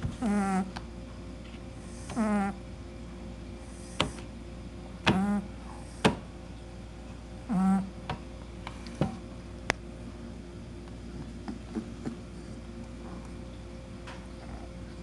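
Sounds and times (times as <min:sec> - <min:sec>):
puppy snoring: 0:00.0 - 0:00.8, 0:01.8 - 0:02.6, 0:03.6 - 0:04.3, 0:05.1 - 0:06.3, 0:07.4 - 0:08.0, 0:14.4 - 0:15.0.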